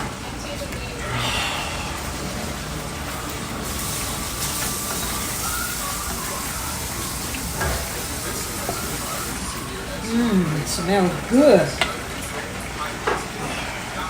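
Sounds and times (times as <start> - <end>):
garlic sizzling in hot oil: 1.7 - 14.0.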